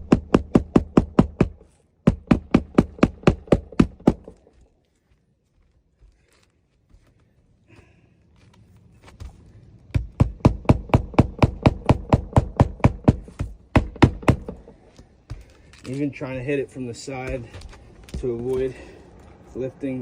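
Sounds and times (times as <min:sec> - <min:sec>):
hammer driving nail: 0:00.0 - 0:04.3, 0:10.0 - 0:14.7.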